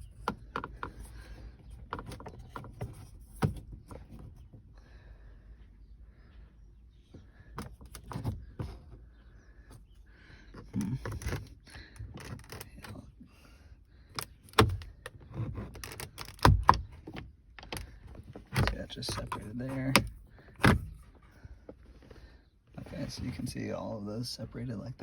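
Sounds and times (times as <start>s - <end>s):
plastic scraping and creaking: 0.0s - 4.6s, 10.5s - 13.2s, 14.0s - 25.0s.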